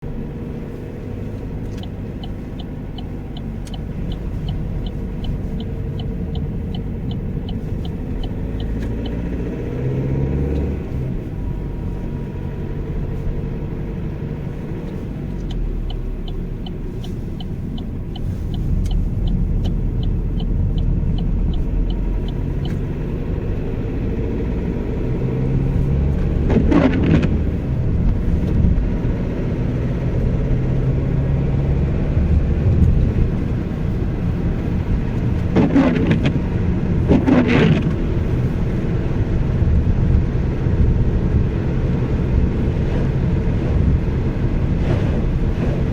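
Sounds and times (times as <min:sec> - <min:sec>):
regular ticking: 0:00.0 - 0:24.5
car engine running: 0:00.0 - 0:45.9
engine rattle: 0:00.0 - 0:45.9.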